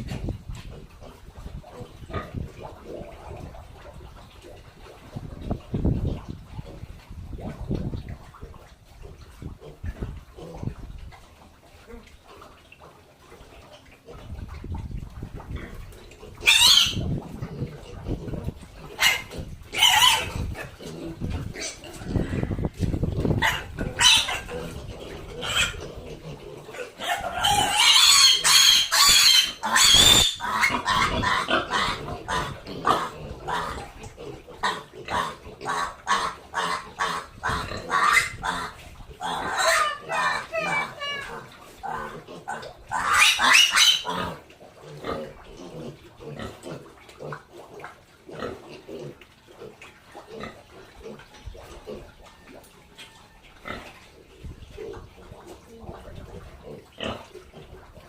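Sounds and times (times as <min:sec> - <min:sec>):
pig grunting: 0:00.0 - 0:03.8, 0:09.0 - 0:10.9, 0:15.4 - 0:52.5, 0:53.6 - 0:58.0
pig squealing: 0:16.2 - 0:47.4.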